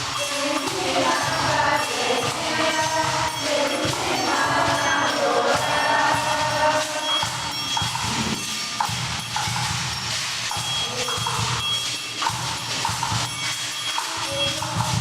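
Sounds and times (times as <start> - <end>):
group of voices singing: 0.0 - 8.5
percussion on homemade objects: 0.0 - 15.0.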